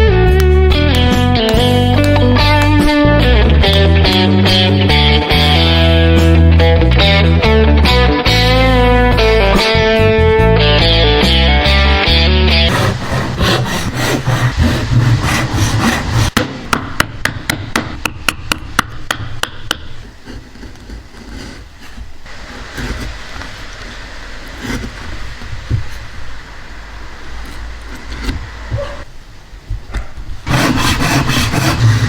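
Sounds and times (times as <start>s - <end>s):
steady scraping: 12.7s - 16.4s, 20.0s - 26.2s, 30.5s - 32.0s
hammer blows on wood: 12.7s - 17.6s.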